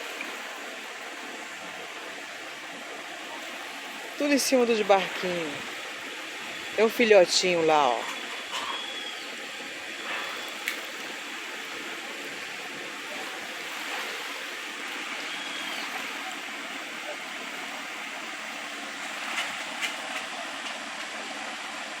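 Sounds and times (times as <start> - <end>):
rushing water and air: 0.0 - 22.0
faint high chirps: 15.1 - 16.4.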